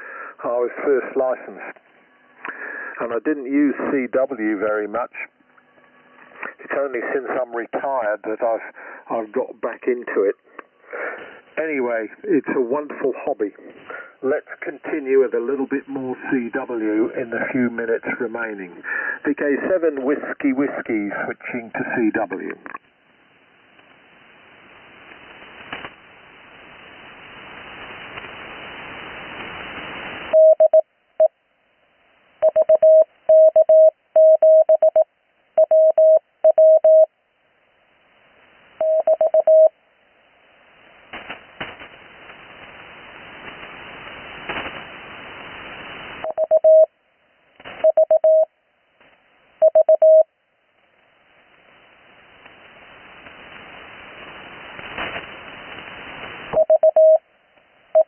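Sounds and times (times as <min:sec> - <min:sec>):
radio band hiss: 0:00.0 - 0:31.3, 0:38.0 - 0:50.2, 0:50.8 - 0:58.0
morse code tone: 0:30.4 - 0:31.3, 0:32.4 - 0:37.1, 0:38.8 - 0:39.7, 0:46.2 - 0:46.9, 0:47.8 - 0:48.5, 0:49.6 - 0:50.3, 0:56.6 - 0:57.2.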